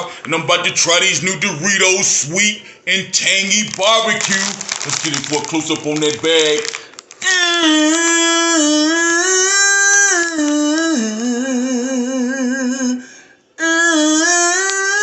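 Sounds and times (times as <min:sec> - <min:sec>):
person humming a slow tune: 0:07.2 - 0:15.0.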